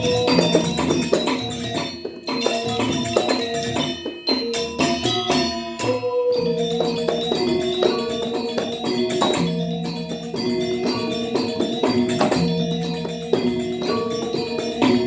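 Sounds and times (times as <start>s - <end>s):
gamelan metallophones playing: 0.0s - 15.0s.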